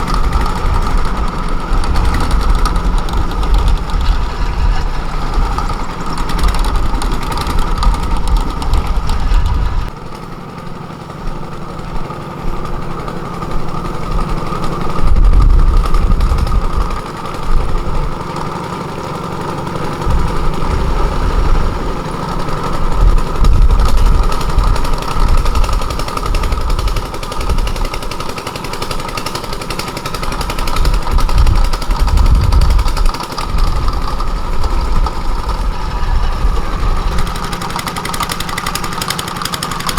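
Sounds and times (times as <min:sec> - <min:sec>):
heavy low rumble: 0:00.0 - 0:09.9, 0:30.9 - 0:37.5
engine humming: 0:00.0 - 0:39.9.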